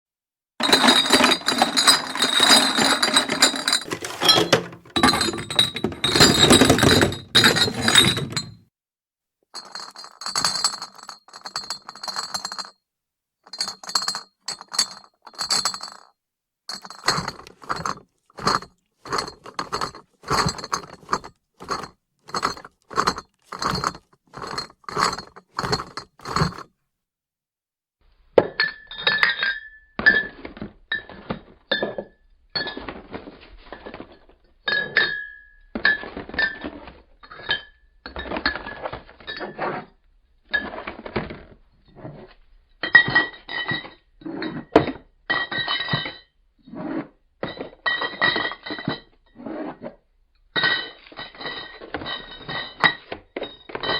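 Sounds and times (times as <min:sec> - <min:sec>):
glass bottles clinking in a box: 0:00.6 - 0:08.6, 0:09.6 - 0:12.7, 0:13.5 - 0:16.1, 0:16.7 - 0:26.7, 0:28.4 - 0:33.2, 0:34.7 - 0:39.6, 0:42.8 - 0:46.3, 0:47.4 - 0:49.2, 0:50.6 - 0:53.9.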